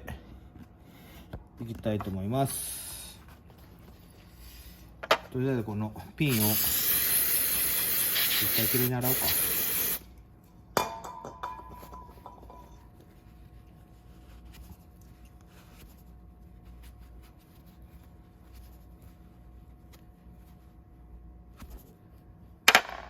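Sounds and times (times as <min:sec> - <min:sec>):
faint handling and rubbing of parts: 0:03.1 - 0:05.6, 0:11.9 - 0:22.6.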